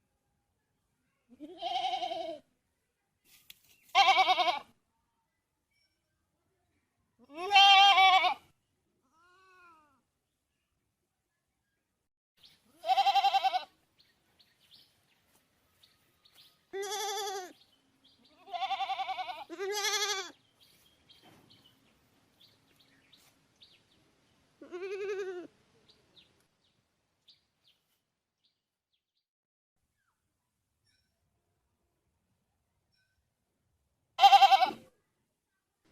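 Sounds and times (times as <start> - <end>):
goat bleating: 1.3 - 2.4, 3.9 - 4.7, 7.2 - 8.5, 9.1 - 10.0, 12.7 - 13.8, 16.7 - 17.6, 18.2 - 20.4, 24.6 - 25.5, 34.2 - 34.9.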